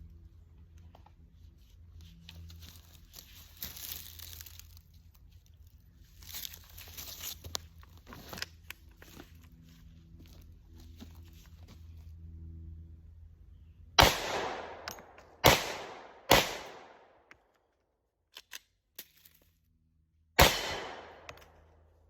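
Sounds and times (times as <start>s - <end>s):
steady low hum: 0.0s - 17.3s
rustling handling noise: 1.0s - 12.2s.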